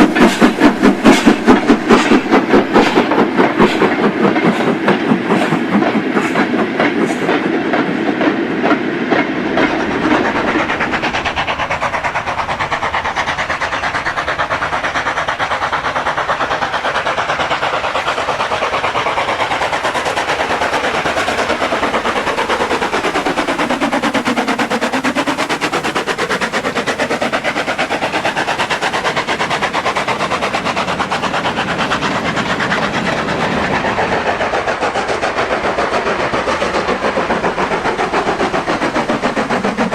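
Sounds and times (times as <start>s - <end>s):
model train clicking over rails: 0.0s - 39.9s.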